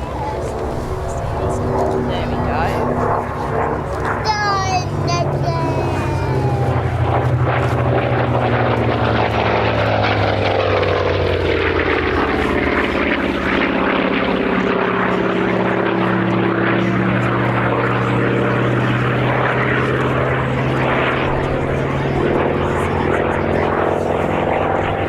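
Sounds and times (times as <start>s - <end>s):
propeller aircraft engine passing: 0.0s - 25.0s.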